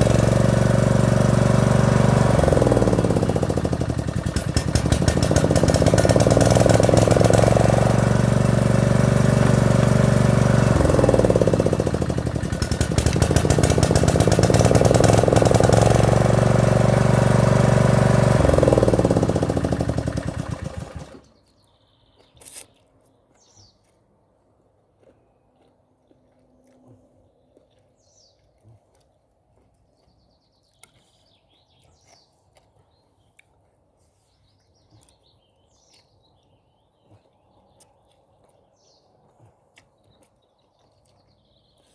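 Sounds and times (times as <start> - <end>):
lawn mower engine revving: 0.0 - 21.3.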